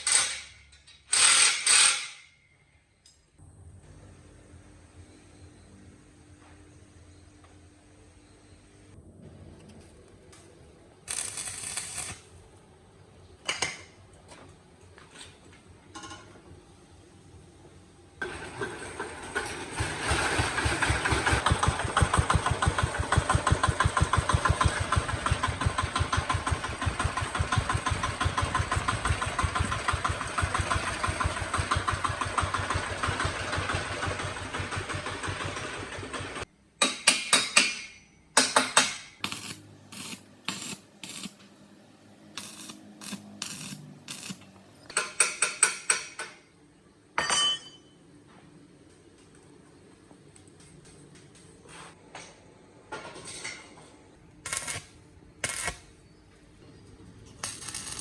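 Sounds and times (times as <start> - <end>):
small engine running: 19.8 - 36.4, 39.2 - 44.9.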